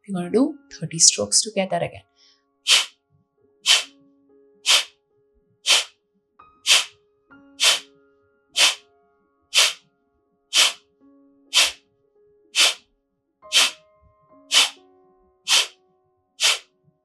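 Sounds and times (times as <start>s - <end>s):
soft ambient music: 0.0s - 17.0s
forceful nasal exhalations: 2.7s - 2.9s, 3.7s - 3.9s, 4.6s - 4.9s, 5.7s - 5.9s, 6.7s - 6.9s, 7.6s - 7.9s, 8.6s - 8.8s, 9.6s - 9.8s, 10.5s - 10.8s, 11.5s - 11.8s, 12.6s - 12.8s, 13.5s - 13.8s, 14.5s - 14.8s, 15.5s - 15.8s, 16.4s - 16.6s.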